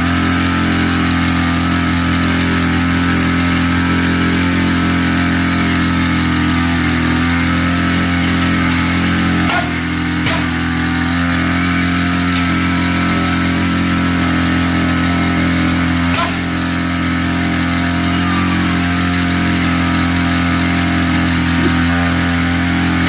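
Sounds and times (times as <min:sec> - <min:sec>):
small engine running: 0:00.0 - 0:23.0
sharp knock: 0:09.5 - 0:10.6, 0:16.1 - 0:16.4.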